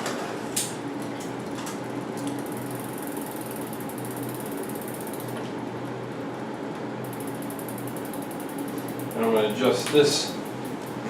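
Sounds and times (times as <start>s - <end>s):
bicycle chain running over gears: 2.4s - 5.4s, 7.1s - 10.5s.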